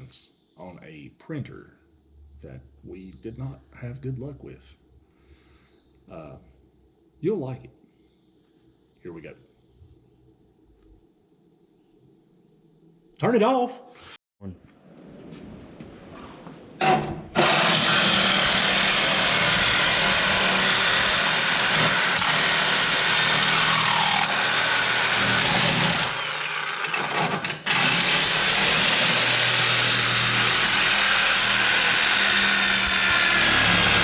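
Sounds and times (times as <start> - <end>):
power tool motor running: 17.4 - 34.0.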